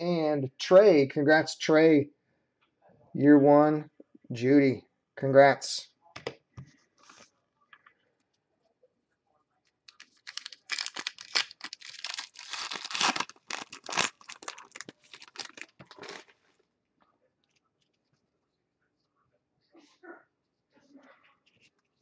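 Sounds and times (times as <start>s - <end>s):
foil pack tearing and crinkling: 9.9s - 16.3s.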